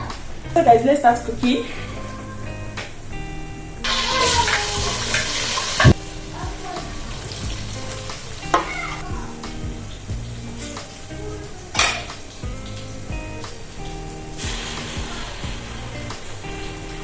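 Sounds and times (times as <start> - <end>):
soft background music: 0.0 - 17.0
food sizzling in oil: 1.2 - 17.0
utensil knocking a pot: 11.8 - 12.1.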